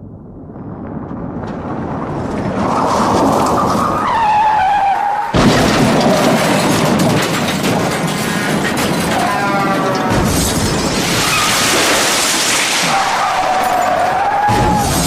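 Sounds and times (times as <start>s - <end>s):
tyres squealing in a skid: 2.5s - 15.0s
loud crash impact: 5.3s - 8.2s, 10.1s - 15.0s
clattering crunching debris: 5.3s - 15.0s.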